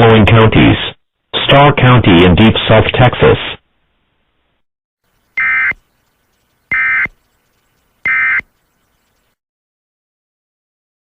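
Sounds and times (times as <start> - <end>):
buzzing digital data tone bursts: 5.4 - 5.8, 6.7 - 7.2, 8.0 - 8.5.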